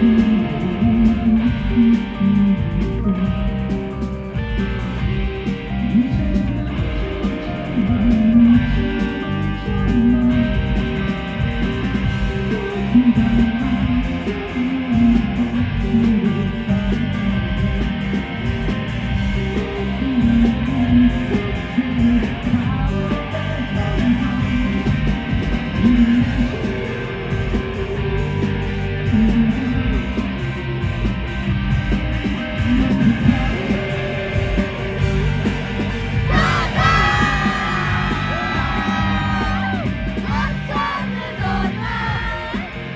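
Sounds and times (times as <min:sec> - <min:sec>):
rock band playing live: 0:00.0 - 0:42.9
person singing: 0:36.3 - 0:42.8.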